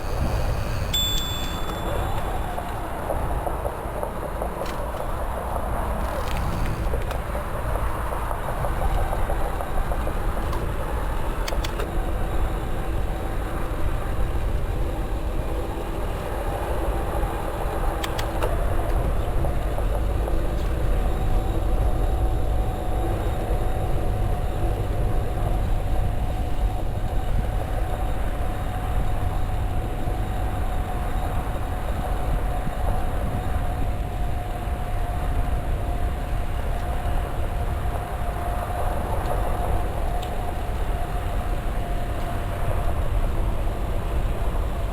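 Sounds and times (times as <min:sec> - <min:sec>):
e-bike motor rumble and whine: 0:00.0 - 0:44.9
sharp clicks: 0:18.0 - 0:18.5.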